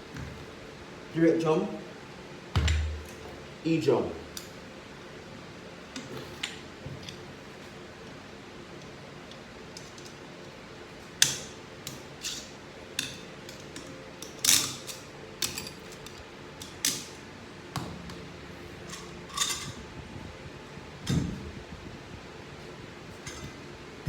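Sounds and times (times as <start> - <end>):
metal parts clinking on workbench: 18.9 - 19.8.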